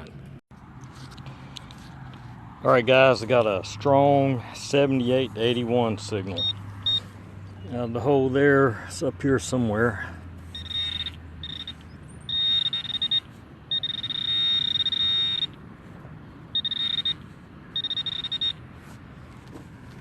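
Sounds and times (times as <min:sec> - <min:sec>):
metal detector high-pitched tone: 0:06.3 - 0:07.1, 0:10.5 - 0:15.6, 0:16.5 - 0:18.6.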